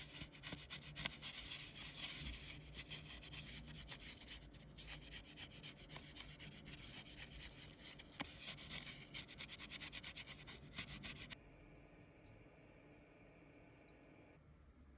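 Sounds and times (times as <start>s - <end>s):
foil rubbed in scratchy strokes: 0.0s - 11.4s.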